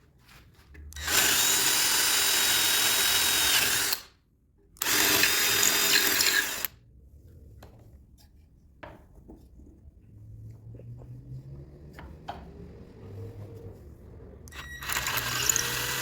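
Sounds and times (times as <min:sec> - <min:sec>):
power tool whining: 0:01.0 - 0:04.1, 0:04.8 - 0:06.7, 0:14.5 - 0:16.0.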